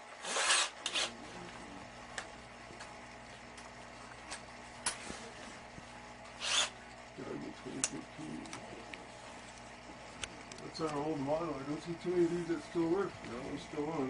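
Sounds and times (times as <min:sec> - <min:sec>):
steady low hum: 0:00.0 - 0:14.0
short scrape: 0:00.2 - 0:01.2.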